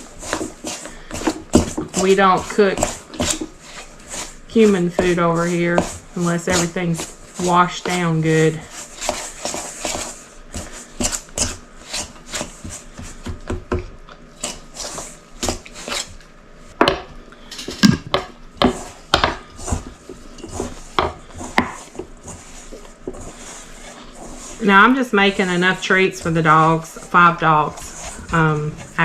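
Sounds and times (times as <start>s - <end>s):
utensil scraping a bowl: 0.0s - 13.3s, 14.3s - 16.2s, 18.6s - 29.0s.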